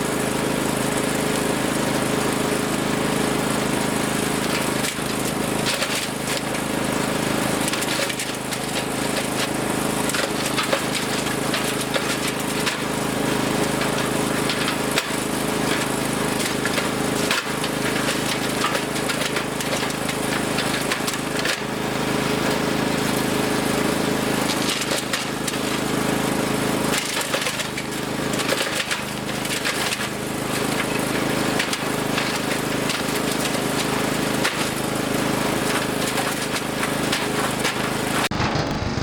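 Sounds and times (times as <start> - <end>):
wood chipper engine running: 0.0 - 39.0
wood cracking and snapping: 35.7 - 39.0.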